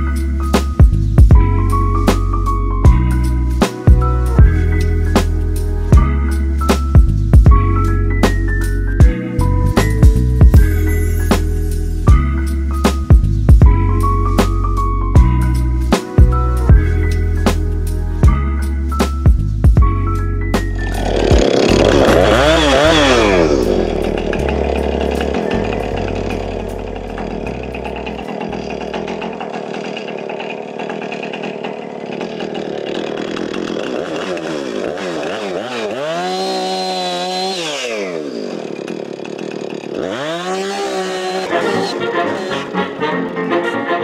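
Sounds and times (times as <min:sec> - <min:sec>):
chainsaw cutting trees: 0:20.6 - 0:43.4.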